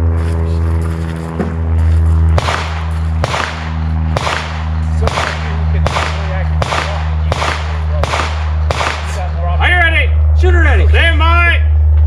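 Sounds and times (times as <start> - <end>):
steady low hum: 0.0 - 12.0
gunshots ringing on steel targets: 2.4 - 9.3.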